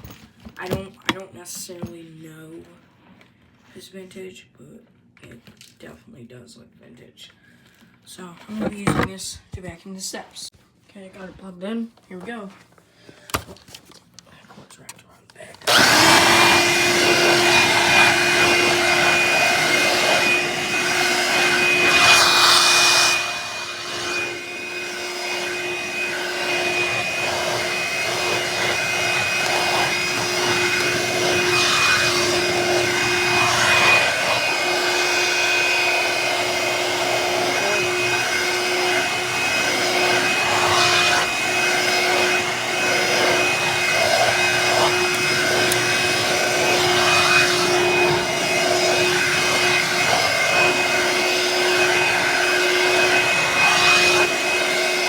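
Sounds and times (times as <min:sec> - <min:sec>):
hand vacuum motor whine: 0:15.6 - 0:55.0
vacuum brush on stairs: 0:15.6 - 0:55.0.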